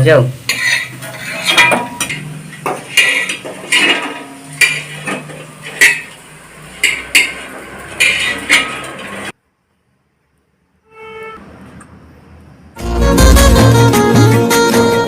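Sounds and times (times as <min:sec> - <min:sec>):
metal spatula scraping griddle: 0:00.5 - 0:09.3.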